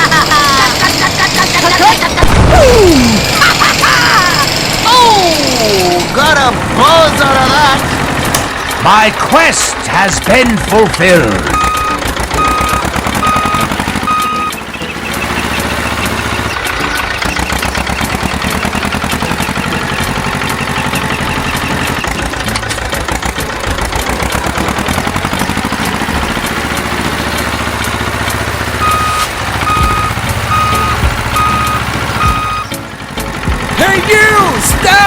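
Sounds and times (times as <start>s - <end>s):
engine running: 0.0s - 35.0s
reversing alarm beeping: 11.2s - 22.2s, 28.7s - 32.8s.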